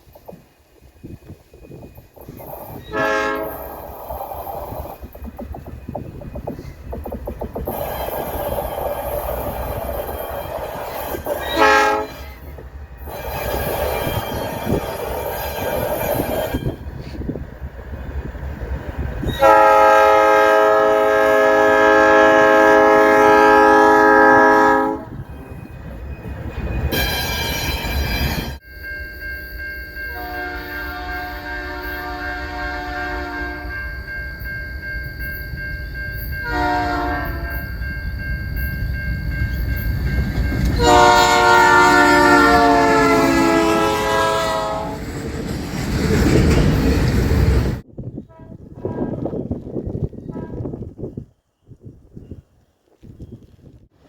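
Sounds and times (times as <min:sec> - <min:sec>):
rumble of passing freight trains: 0:00.0 - 0:54.0
locomotive horn blasts: 0:02.9 - 0:03.6, 0:11.4 - 0:12.5, 0:19.4 - 0:25.1, 0:30.1 - 0:33.8, 0:36.4 - 0:37.7, 0:40.8 - 0:45.0.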